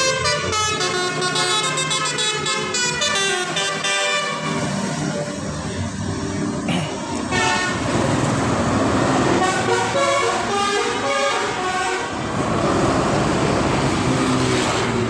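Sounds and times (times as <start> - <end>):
multi-tone musical bus horn: 0.0 - 5.1, 7.2 - 8.1, 9.2 - 12.3
bus engine rumble: 0.0 - 15.0.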